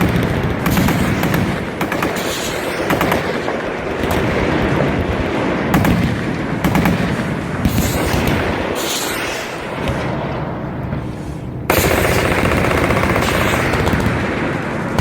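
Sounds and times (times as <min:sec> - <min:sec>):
automatic gunfire bursts: 0:00.0 - 0:05.1, 0:05.7 - 0:08.8, 0:11.7 - 0:14.4.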